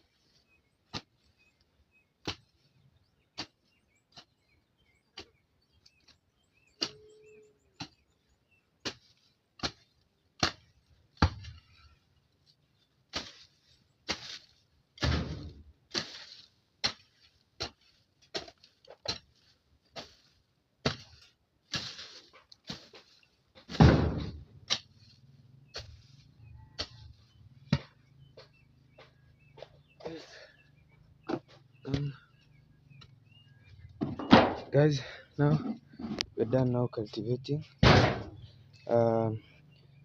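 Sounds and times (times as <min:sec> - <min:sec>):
hoe chopping into soil: 0:08.8 - 0:11.6, 0:13.1 - 0:19.3, 0:23.7 - 0:25.0, 0:37.8 - 0:38.4.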